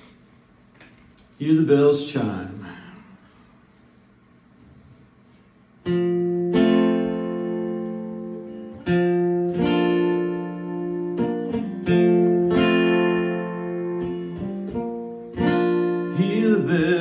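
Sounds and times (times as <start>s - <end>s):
acoustic guitar strumming: 5.8s - 17.0s.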